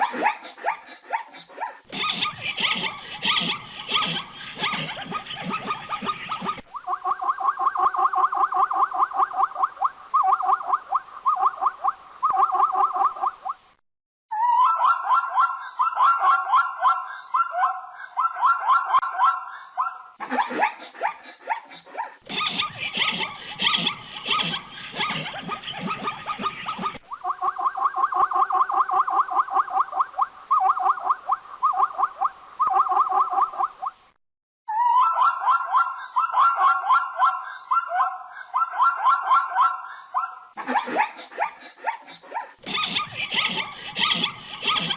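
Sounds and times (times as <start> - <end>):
zebra calling: 0.0 - 6.6, 20.2 - 27.4, 40.6 - 44.9.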